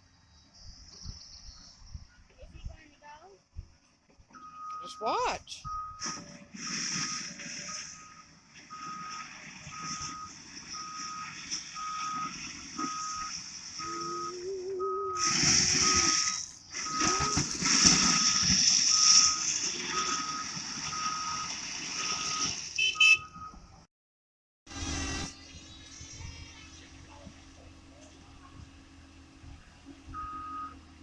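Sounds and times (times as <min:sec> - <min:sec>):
travel alarm beeping: 0:04.4 - 0:06.3, 0:07.0 - 0:17.4, 0:18.0 - 0:23.6, 0:30.1 - 0:30.8
diesel engine running: 0:04.5 - 0:23.8, 0:24.7 - 0:31.0.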